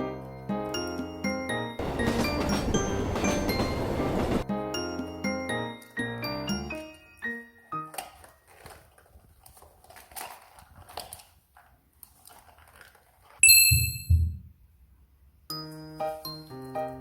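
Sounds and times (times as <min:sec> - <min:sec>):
heavy thuds: 0:01.8 - 0:04.4
small bell ring: 0:13.4 - 0:14.4.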